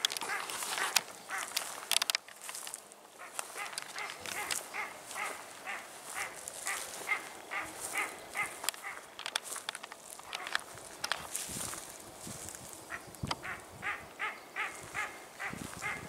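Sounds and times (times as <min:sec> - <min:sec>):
ducks quacking: 0:00.0 - 0:01.8, 0:03.2 - 0:09.6, 0:12.9 - 0:16.0.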